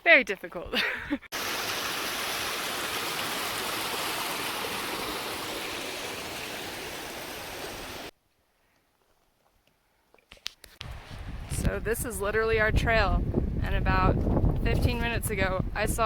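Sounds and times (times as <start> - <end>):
mountain stream rushing: 1.3 - 8.1.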